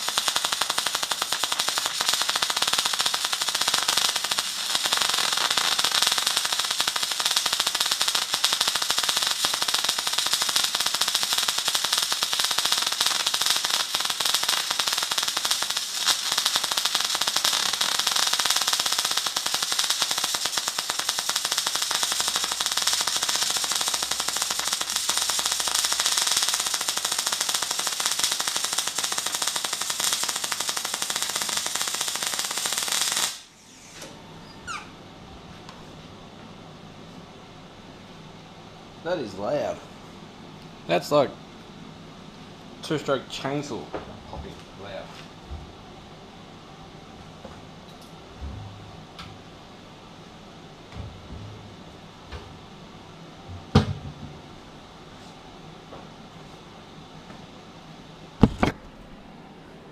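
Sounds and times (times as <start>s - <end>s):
welding arc crackling and popping: 0.0s - 33.7s.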